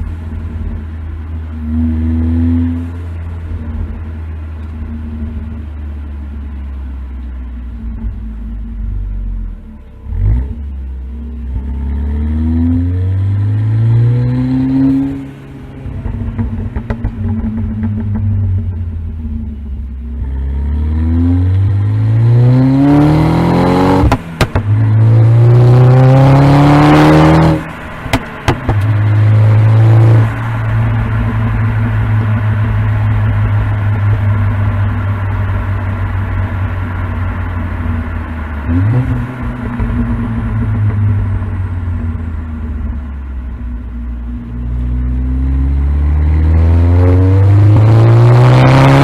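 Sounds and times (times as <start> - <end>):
turbocharged car engine accelerating: 0.0 - 49.0.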